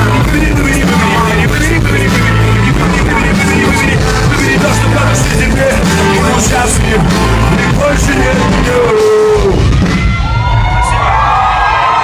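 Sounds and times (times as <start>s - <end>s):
heavy bass line: 0.0s - 11.2s
loud live concert music: 0.0s - 12.0s.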